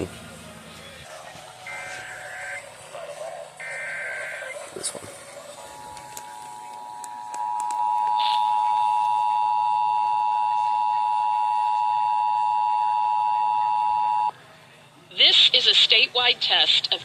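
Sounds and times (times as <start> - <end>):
two-tone alert signal: 1.6 - 2.7.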